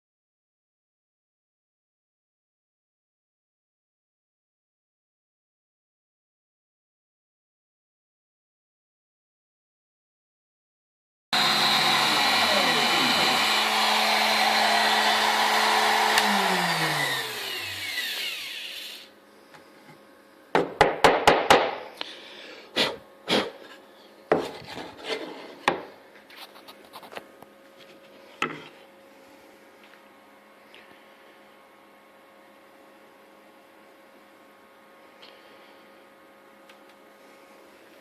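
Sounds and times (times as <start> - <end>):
router spindle cutting wood: 11.4 - 19.1.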